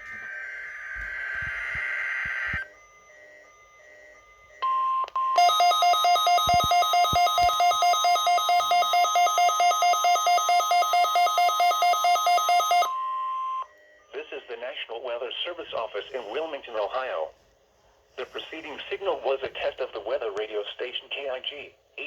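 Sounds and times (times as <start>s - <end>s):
steady alarm tone: 0.0s - 16.9s
rapid alarm beeping: 0.4s - 15.6s.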